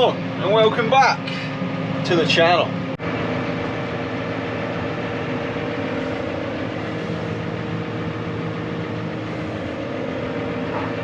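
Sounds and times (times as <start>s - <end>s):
farm vehicle engine droning: 0.0s - 11.0s.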